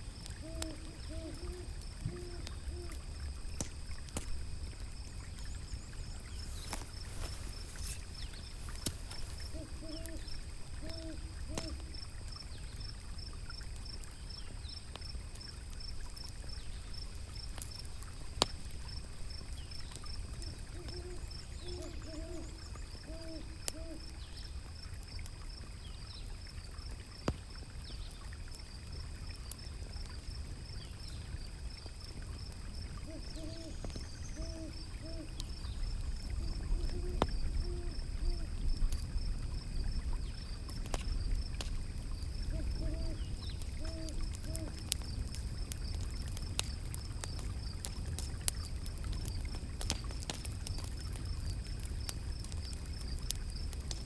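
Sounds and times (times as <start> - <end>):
river water rumbling: 0.0 - 24.8
fire crackling: 0.0 - 54.0
owl hooting: 0.4 - 3.0, 8.6 - 11.9, 20.8 - 24.1, 33.0 - 35.5, 36.7 - 38.5, 42.5 - 44.8.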